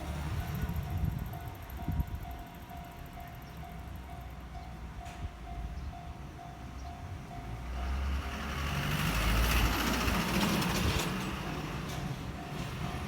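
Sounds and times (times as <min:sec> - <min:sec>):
passing vehicle rumbling: 0:00.0 - 0:01.8, 0:07.2 - 0:13.0
level crossing warning bell: 0:00.0 - 0:08.1, 0:11.6 - 0:13.0.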